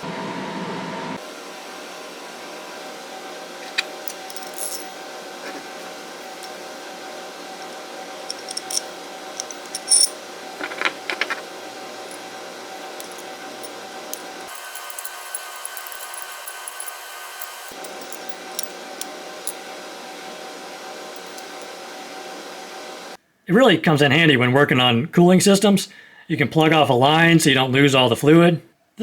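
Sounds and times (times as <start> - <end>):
faint steady hum: 1.3 - 25.1
metal tools clinking: 4.1 - 5.0, 8.3 - 11.4, 12.9 - 19.1, 21.2 - 21.6.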